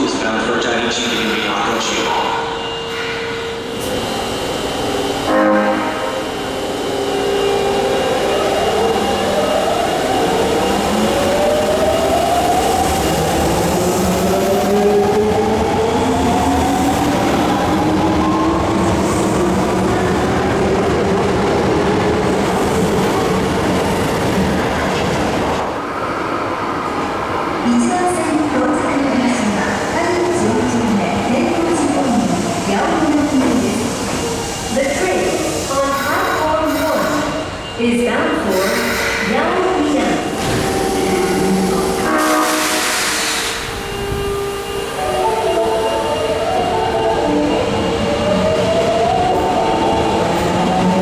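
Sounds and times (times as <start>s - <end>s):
rail and wheel noise: 0.0s - 51.0s
train horn: 5.2s - 6.3s, 40.6s - 45.8s.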